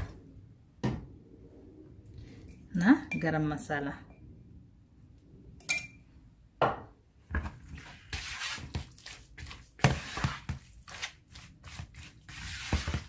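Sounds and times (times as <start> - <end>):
utensil clinking on bowl: 5.6 - 6.0
chicken being stirred in bowl: 7.6 - 13.0.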